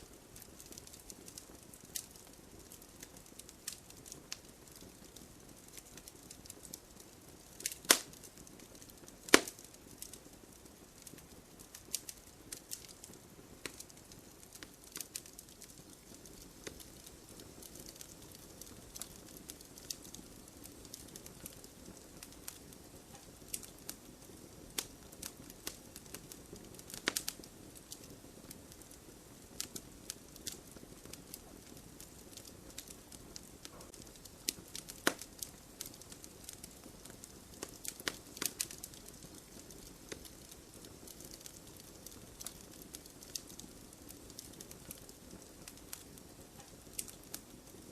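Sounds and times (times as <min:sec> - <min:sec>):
loud snaps of burning logs: 0:00.0 - 0:47.9
wood fire crackling: 0:00.0 - 0:47.9.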